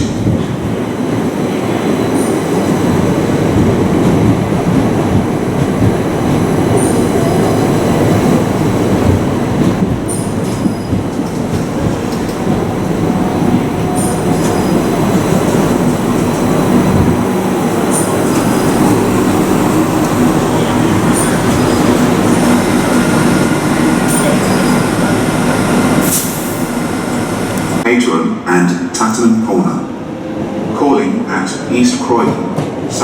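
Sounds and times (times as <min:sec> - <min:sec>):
train wheels rumbling: 0:00.0 - 0:27.9
train wheel squeals: 0:06.7 - 0:07.7, 0:10.1 - 0:11.4, 0:13.4 - 0:16.6, 0:17.8 - 0:27.2.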